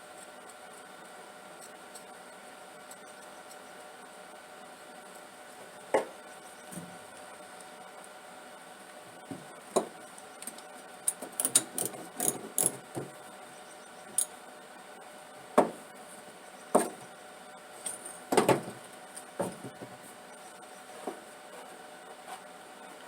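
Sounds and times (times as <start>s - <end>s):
hand tools clicking and clinking: 11.1s - 12.8s.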